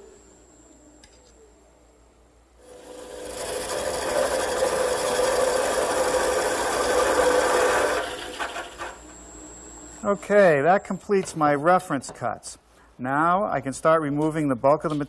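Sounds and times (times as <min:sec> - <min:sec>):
lathe tool scraping wood: 0:02.7 - 0:09.5.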